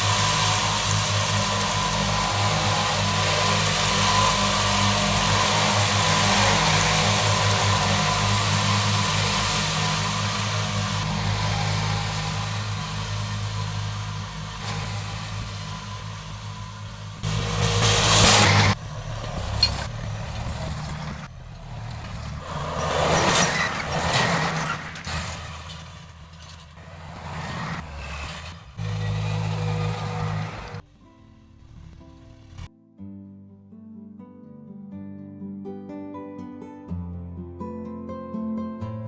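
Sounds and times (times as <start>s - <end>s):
rushing surges: 0.0s - 30.8s
heavy vehicle engine running: 0.0s - 32.7s.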